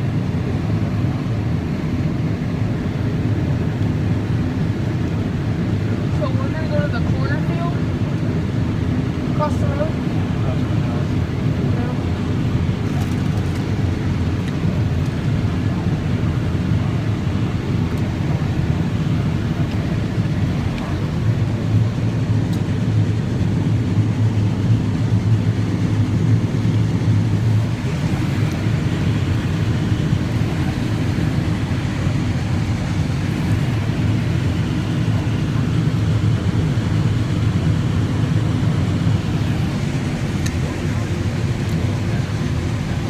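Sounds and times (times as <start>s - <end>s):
combine harvester running: 0.0s - 43.0s
low hum: 27.1s - 43.0s.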